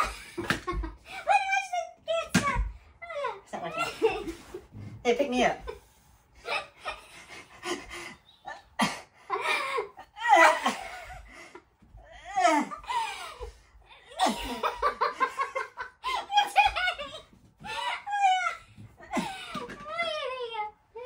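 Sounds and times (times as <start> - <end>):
people laughing: 12.3 - 20.2.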